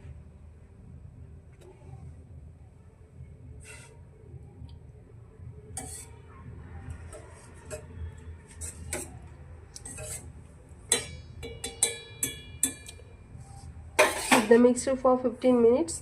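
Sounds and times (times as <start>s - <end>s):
utensil scraping a pan: 3.6s - 4.0s, 5.8s - 6.2s, 6.9s - 12.8s, 13.4s - 14.6s
utensil clinking against pan: 10.9s - 13.1s.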